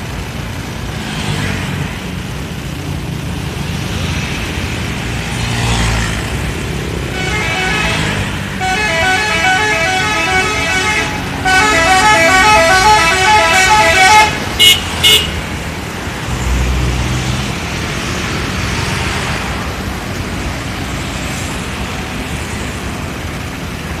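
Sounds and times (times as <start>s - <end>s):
road noise: 0.0s - 24.0s
bus horn melody: 7.0s - 15.4s
short sharp horn toots: 7.1s - 15.4s.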